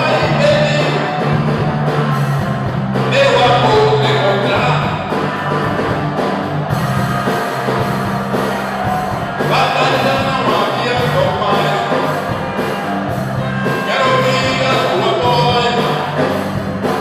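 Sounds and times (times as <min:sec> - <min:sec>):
person singing: 0:00.0 - 0:01.4, 0:03.1 - 0:05.6, 0:08.6 - 0:16.3
live rock band playing: 0:00.0 - 0:17.0.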